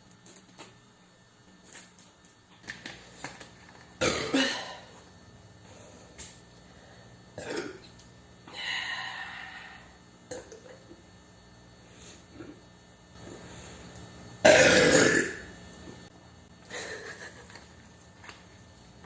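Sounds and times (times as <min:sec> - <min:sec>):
woman burping: 0:04.0 - 0:04.9, 0:07.4 - 0:07.8, 0:10.3 - 0:10.8, 0:14.4 - 0:15.5.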